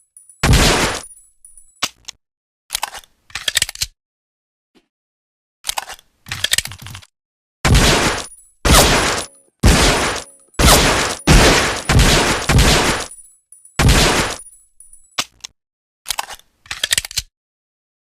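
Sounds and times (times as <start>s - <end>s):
pistol shots: 7.7s - 13.1s, 13.8s - 14.4s.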